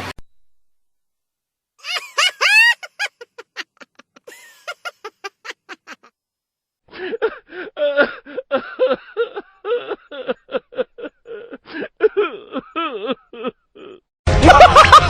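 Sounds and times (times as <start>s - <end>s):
high-pitched laugh: 1.8s - 6.1s, 7.2s - 15.0s
loud laugh: 1.8s - 6.1s, 12.4s - 15.0s
music: 14.3s - 15.0s.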